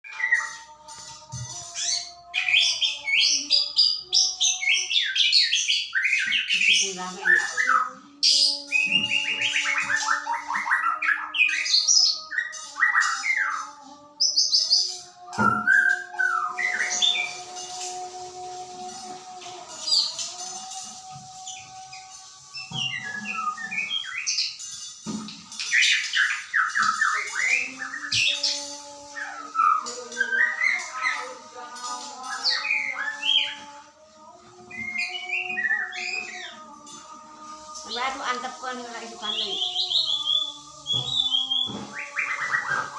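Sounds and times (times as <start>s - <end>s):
bird singing whistled notes: 0.0s - 18.0s, 19.8s - 31.4s, 34.7s - 36.6s, 37.8s - 42.9s
bird singing whistled phrases: 14.5s - 17.4s, 22.5s - 24.6s, 25.6s - 31.2s.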